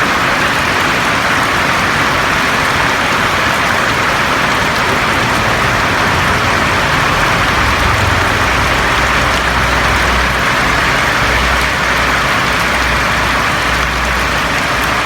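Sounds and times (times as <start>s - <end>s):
rain falling on a roof: 0.0s - 15.0s
low rumble: 5.0s - 12.8s.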